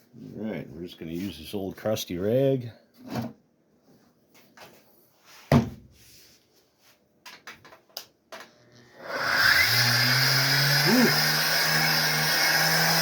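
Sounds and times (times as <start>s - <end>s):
orbital sander motor spinning up: 8.8s - 13.0s.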